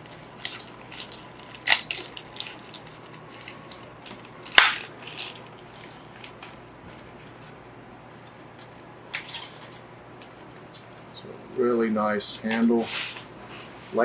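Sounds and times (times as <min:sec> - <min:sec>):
packaging crinkling and clicking: 0:00.0 - 0:06.5
packaging sharp snaps: 0:00.4 - 0:05.5.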